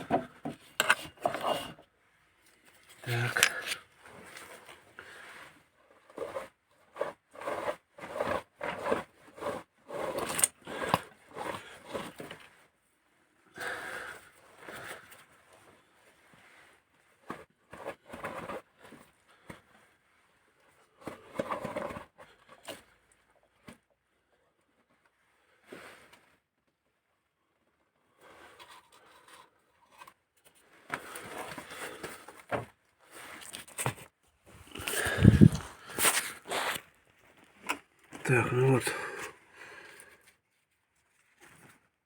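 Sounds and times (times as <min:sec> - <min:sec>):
hands handling engine parts and tools: 0:00.0 - 0:01.8, 0:02.9 - 0:04.8, 0:28.6 - 0:38.3.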